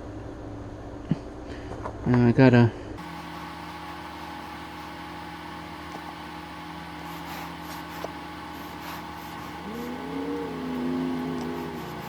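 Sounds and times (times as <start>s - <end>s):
electrical hum of machinery: 0.0s - 12.0s.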